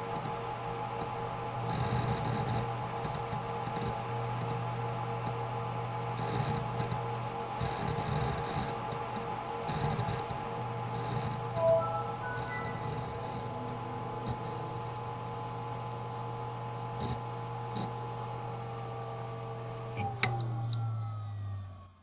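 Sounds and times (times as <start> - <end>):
computer humming: 11.6 - 17.8.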